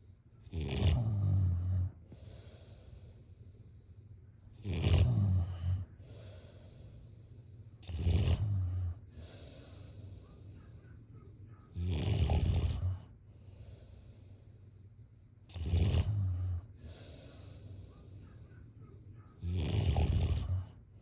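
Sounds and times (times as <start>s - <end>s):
person snoring: 0.5s - 2.7s, 4.6s - 6.7s, 7.8s - 10.0s, 11.8s - 14.0s, 15.5s - 17.8s, 19.4s - 20.8s
breathing hiss: 2.0s - 4.2s, 5.5s - 7.8s, 9.0s - 10.7s, 12.9s - 15.0s, 15.8s - 18.3s.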